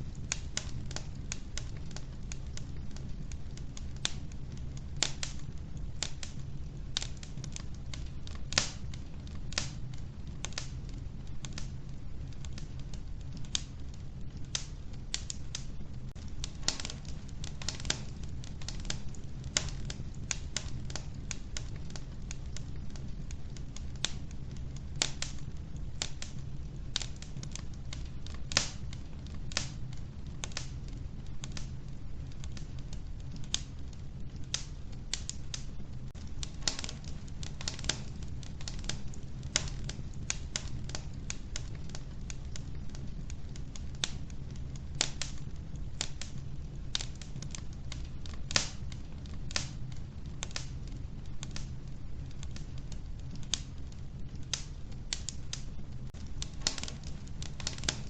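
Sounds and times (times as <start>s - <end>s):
logs crackling and popping: 0.0s - 58.0s
low rumble of flames: 0.0s - 58.0s.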